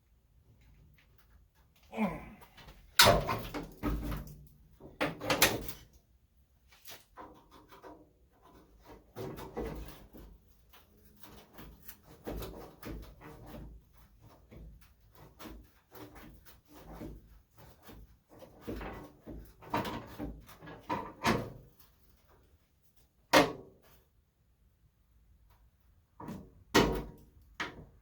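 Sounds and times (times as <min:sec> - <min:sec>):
knocks and clatter of tools: 0:02.5 - 0:06.0, 0:06.9 - 0:22.0.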